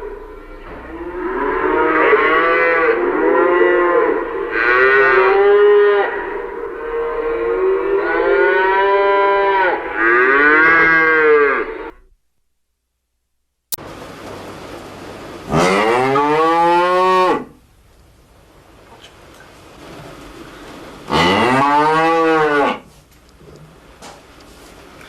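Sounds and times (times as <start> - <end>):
cow mooing: 0.0 - 12.0, 15.5 - 17.5, 21.1 - 22.8.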